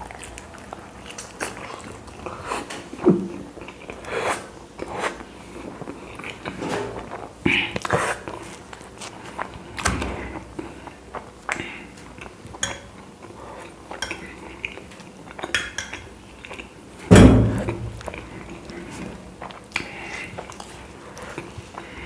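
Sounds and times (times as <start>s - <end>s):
dishes and cutlery clinking: 12.6s - 12.9s, 15.4s - 16.1s
heavy thump: 17.1s - 18.0s.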